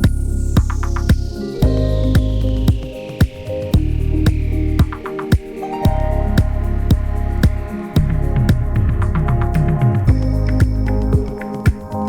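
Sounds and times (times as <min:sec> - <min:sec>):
electronic music with steady beat: 0:00.0 - 0:12.0.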